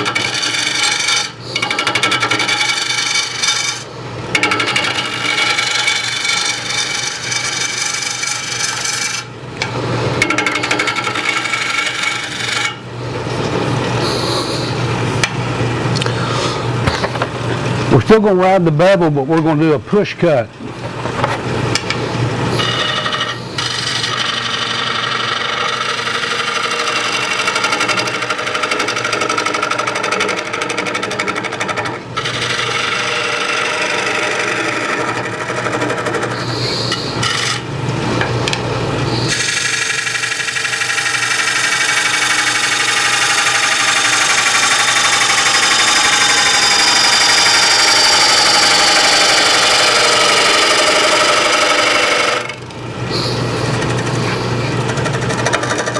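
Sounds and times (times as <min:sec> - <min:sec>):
gouge shaving wood on lathe: 0:00.0 - 0:09.3, 0:10.2 - 0:12.8, 0:22.5 - 0:37.7, 0:39.1 - 0:55.9
lathe motor hum: 0:00.0 - 0:15.3, 0:22.5 - 0:55.9.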